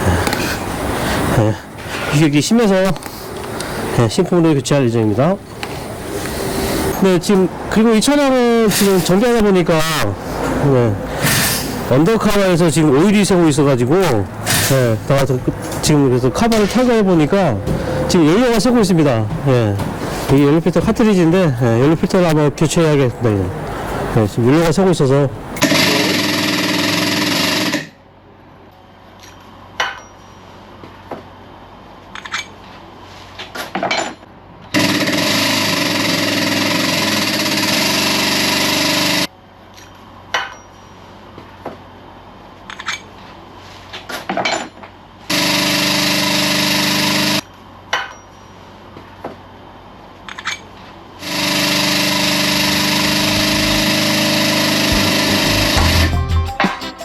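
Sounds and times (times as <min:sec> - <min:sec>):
power tool running: 0:51.2 - 0:56.1.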